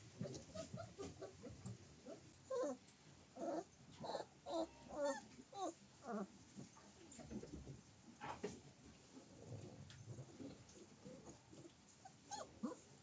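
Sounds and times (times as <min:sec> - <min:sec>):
dog whining: 0:00.2 - 0:06.3, 0:12.0 - 0:12.9.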